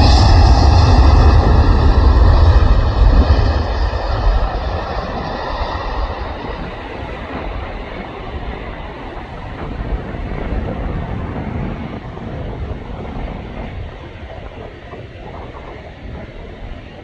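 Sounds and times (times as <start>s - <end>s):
jet engines rumbling at takeoff: 0.0s - 17.0s.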